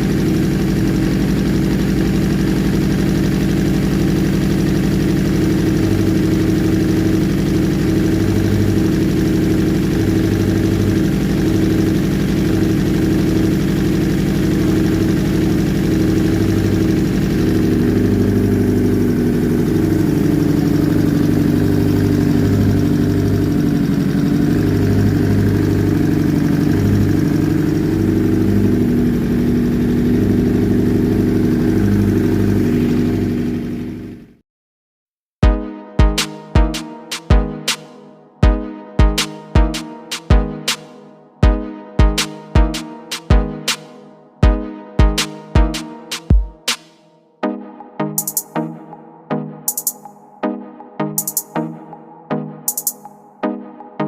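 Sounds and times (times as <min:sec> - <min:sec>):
engine idling: 0:00.0 - 0:34.3.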